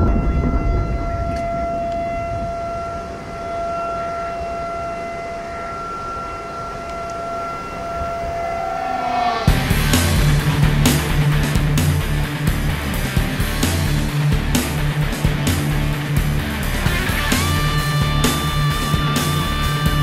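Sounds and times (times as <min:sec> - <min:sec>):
warning siren steady tone: 0:00.0 - 0:10.3, 0:16.9 - 0:20.0
low rumbling noise: 0:00.0 - 0:20.0.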